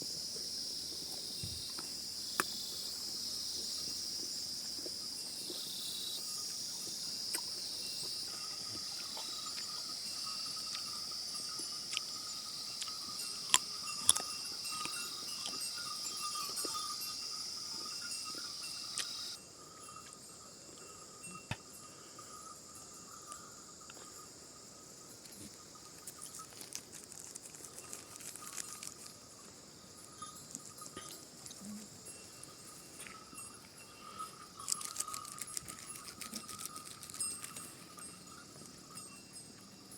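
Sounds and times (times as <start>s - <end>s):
high insect buzz: 0.0s - 20.4s
livestock bells clinking: 3.1s - 26.7s, 27.6s - 39.9s.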